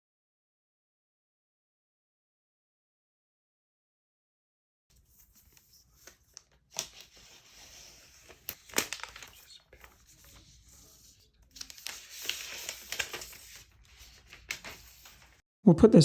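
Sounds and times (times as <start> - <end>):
packaging crinkling and rustling: 5.0 - 15.4.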